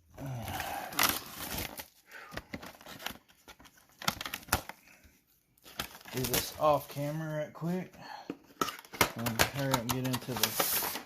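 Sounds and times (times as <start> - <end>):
plastic wrap crinkling and tearing: 0.2 - 4.9, 5.6 - 7.3.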